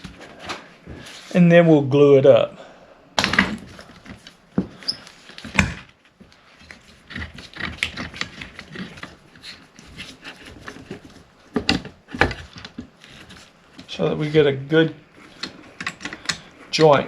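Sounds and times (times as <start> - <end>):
boards clicking and rubbing: 3.2 - 13.9.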